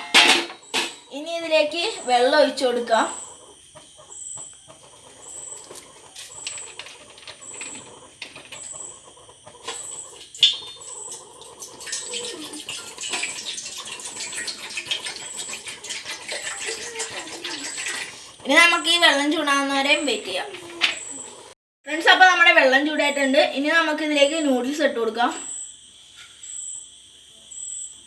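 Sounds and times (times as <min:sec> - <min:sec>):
water pouring into a pot: 0:10.2 - 0:18.4.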